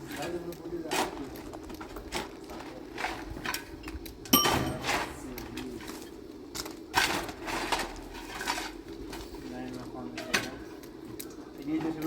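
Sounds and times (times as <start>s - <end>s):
sharp metallic clang: 4.3s - 5.1s
metal being handled: 4.3s - 5.4s.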